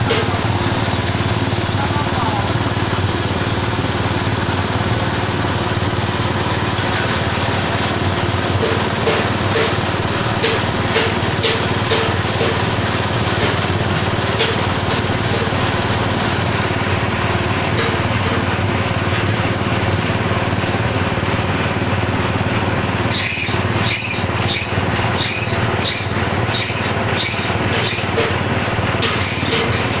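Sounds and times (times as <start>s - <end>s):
pellet machine motor running: 0.0s - 30.0s
high-pitched chirp: 23.1s - 28.1s.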